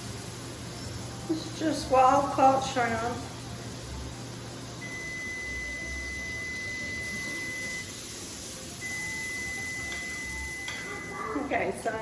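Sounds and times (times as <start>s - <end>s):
food sizzling on a griddle: 0.0s - 12.0s
electronic beeper high tone: 4.8s - 7.9s, 8.8s - 11.4s.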